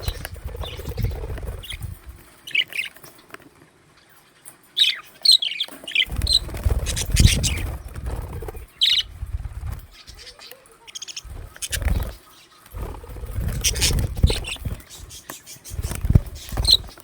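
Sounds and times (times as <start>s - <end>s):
budgerigars chirping: 0.0s - 3.0s, 4.8s - 9.2s, 9.9s - 17.0s.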